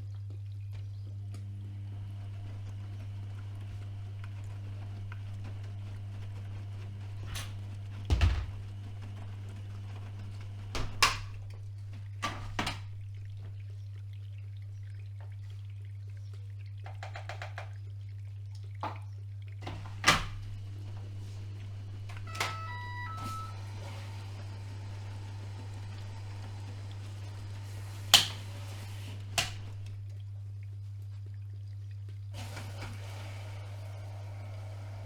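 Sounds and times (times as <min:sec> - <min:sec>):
washing machine hum: 0:00.0 - 0:35.0
drum thuds and knocks: 0:08.1 - 0:08.8.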